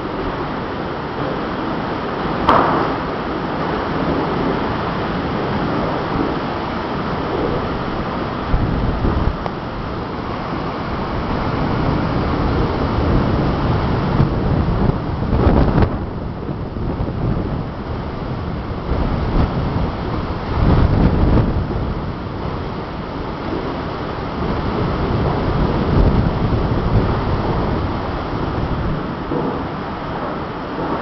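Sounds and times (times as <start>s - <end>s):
storm wind gusting on microphone: 0.0s - 31.0s
sharp crack: 2.4s - 3.7s.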